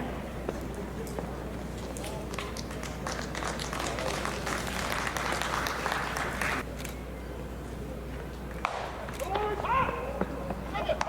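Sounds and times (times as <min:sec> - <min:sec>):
spectators clapping: 0:02.0 - 0:06.6.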